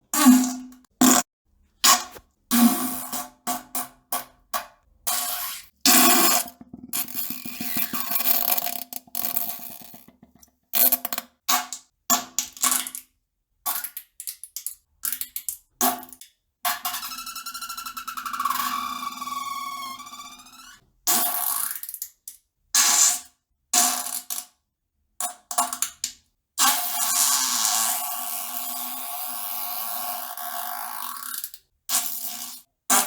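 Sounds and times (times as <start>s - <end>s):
fart sounds: 5.9s - 10.1s, 18.2s - 20.8s.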